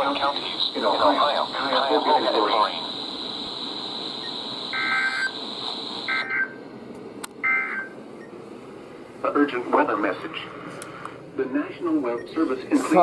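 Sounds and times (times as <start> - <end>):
warbling digital data tones: 0.0 - 6.6.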